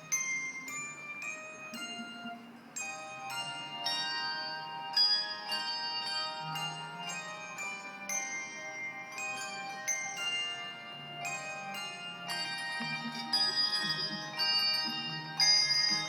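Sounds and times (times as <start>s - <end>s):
tuned bells ringing a melody: 0.0s - 16.0s.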